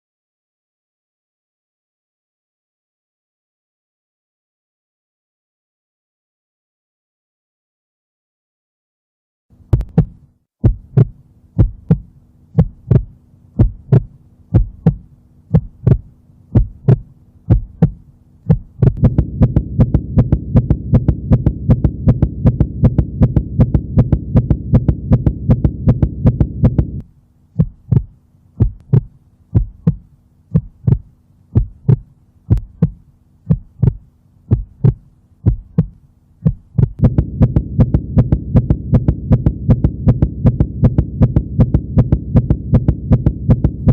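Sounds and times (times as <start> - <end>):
heartbeat through stethoscope: 9.7 - 43.9
low rushing hum: 11.6 - 43.9.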